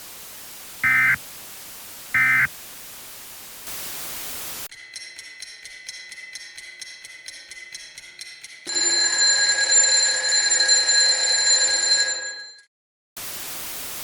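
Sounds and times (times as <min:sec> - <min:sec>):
electronic ticking: 0:00.8 - 0:01.2, 0:02.2 - 0:02.5
steady high tone: 0:00.8 - 0:01.2.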